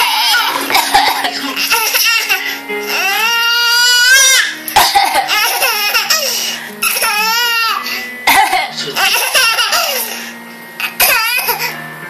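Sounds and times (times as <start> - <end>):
music with held notes: 0.0 - 12.0
child squealing: 3.0 - 4.6.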